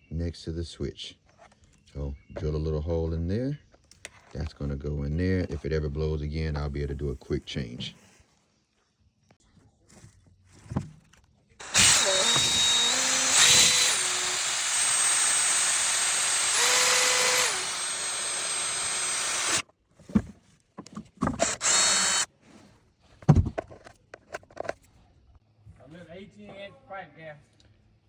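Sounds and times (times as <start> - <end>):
power drill boring: 11.6 - 19.6, 21.3 - 22.3.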